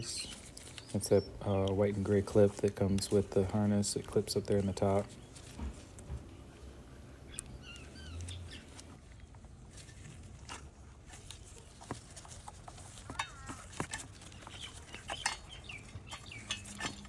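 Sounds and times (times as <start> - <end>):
birds chirping: 0.0 - 10.2, 11.4 - 17.0.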